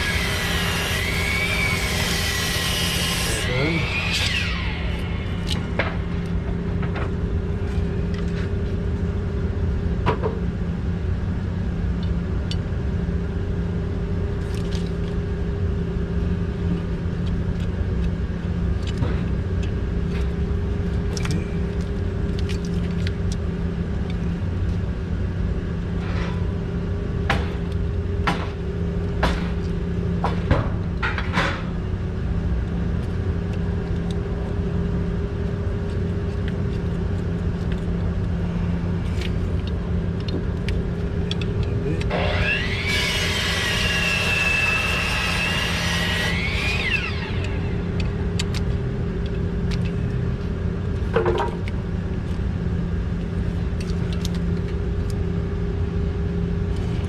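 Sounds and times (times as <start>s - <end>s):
low machine hum: 0.0s - 57.0s.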